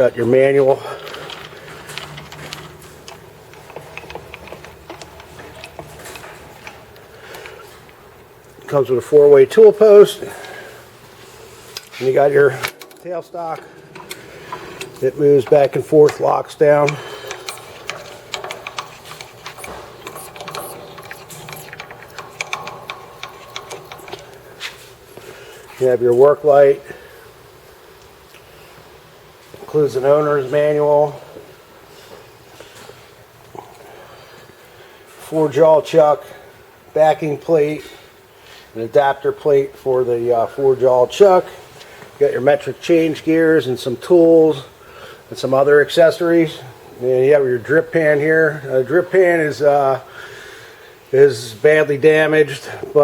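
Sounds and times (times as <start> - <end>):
steady low hum: 0.0 - 53.0
metal clicks knocks and scraping: 1.0 - 7.6, 12.6 - 24.9.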